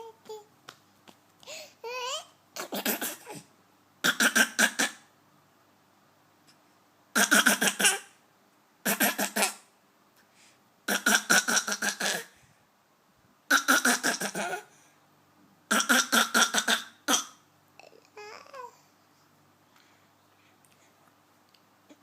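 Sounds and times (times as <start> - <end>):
soft child voice: 0.0 - 0.5, 1.7 - 3.5, 17.8 - 19.0
toddler coughing: 2.1 - 5.1, 7.2 - 8.1, 8.8 - 9.7, 10.9 - 12.3, 13.5 - 14.7, 15.7 - 17.4.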